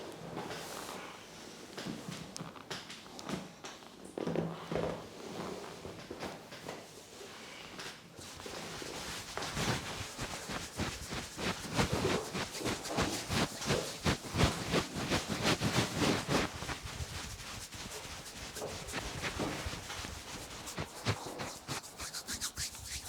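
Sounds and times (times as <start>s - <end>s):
hands massaging bare skin: 8.2s - 23.0s.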